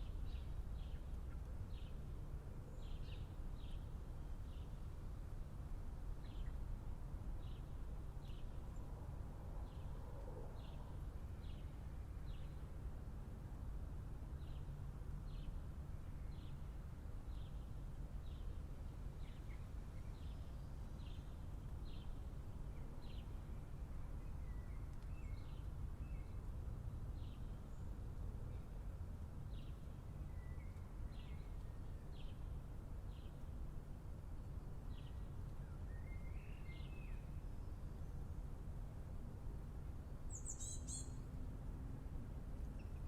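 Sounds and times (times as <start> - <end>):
small bird chirping: 40.3 - 41.2.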